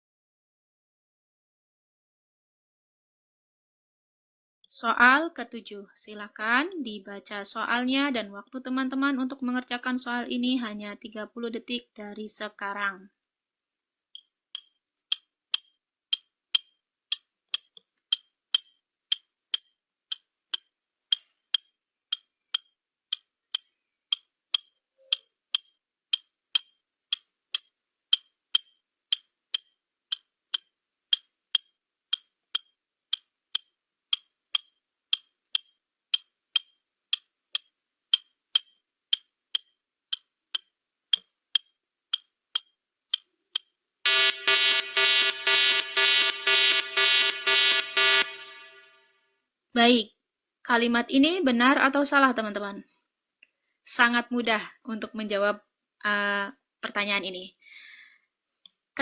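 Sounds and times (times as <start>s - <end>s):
clock ticking: 14.2s - 48.8s.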